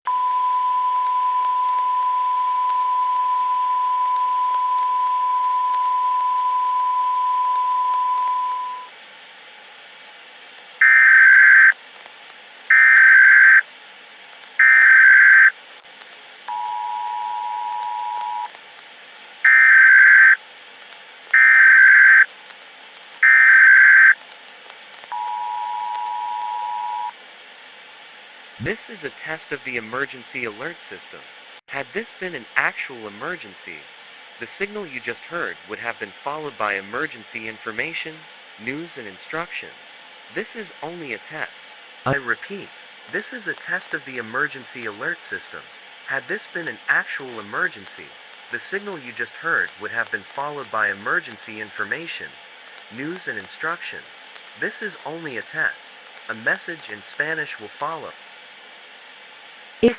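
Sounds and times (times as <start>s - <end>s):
steady high tone: 0.1s - 8.9s, 16.5s - 18.5s, 25.1s - 27.2s
two-tone attention signal: 0.1s - 8.9s, 16.5s - 18.5s, 25.1s - 27.1s
buzzing data bursts: 10.8s - 11.8s, 12.7s - 13.6s, 14.6s - 15.5s, 19.4s - 20.4s, 21.3s - 22.3s, 23.2s - 24.2s.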